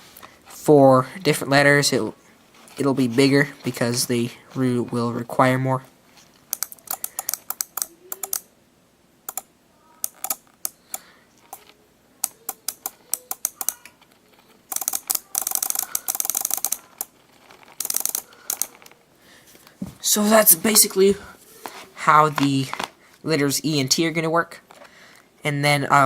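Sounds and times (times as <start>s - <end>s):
relays clicking: 14.7s - 19.0s.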